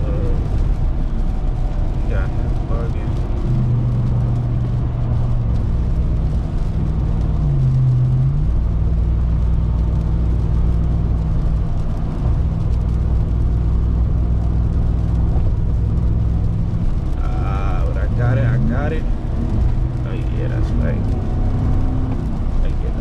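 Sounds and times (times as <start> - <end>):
truck engine humming: 0.0 - 23.0.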